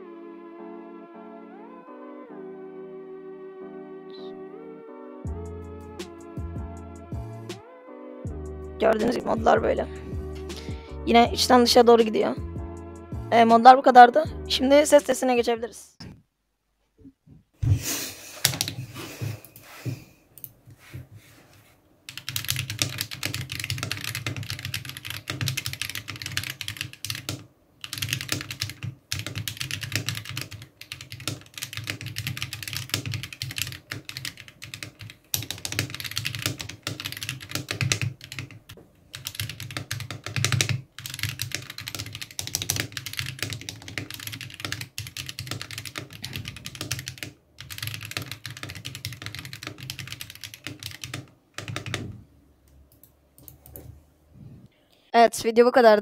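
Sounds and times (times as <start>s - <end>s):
mechanical keyboard typing: 18.5s - 18.8s, 22.1s - 52.1s.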